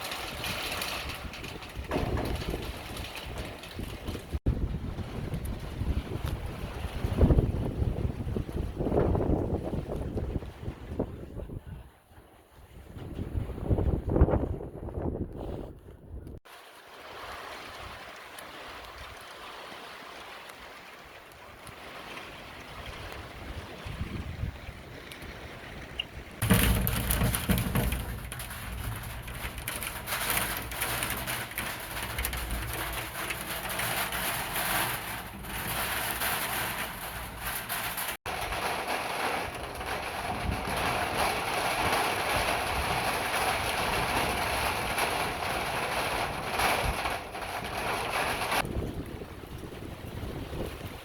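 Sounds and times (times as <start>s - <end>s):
rain falling: 0.0s - 4.4s, 26.4s - 50.2s.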